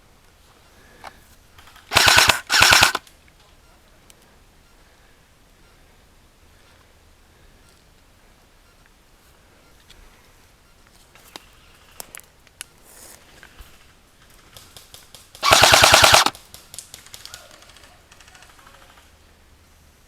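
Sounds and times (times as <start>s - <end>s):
airsoft gun full-auto burst: 1.9s - 3.0s, 15.3s - 19.1s
faint scattered clicks: 10.8s - 12.8s.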